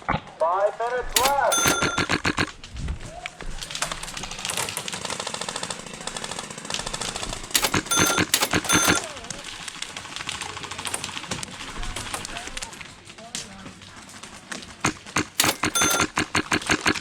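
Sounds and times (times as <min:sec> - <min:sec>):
airsoft guns firing bursts: 0:01.2 - 0:02.5, 0:04.1 - 0:09.4, 0:14.8 - 0:17.0.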